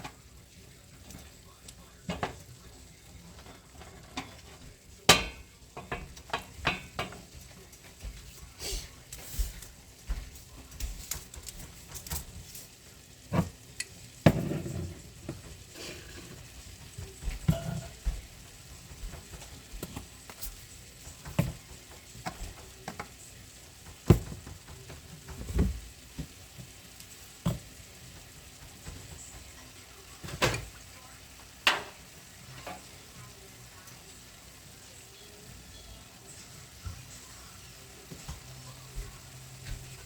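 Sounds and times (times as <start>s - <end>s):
faint sizzle: 0.0s - 40.0s
utensil scraping and knocking pan: 14.3s - 16.5s.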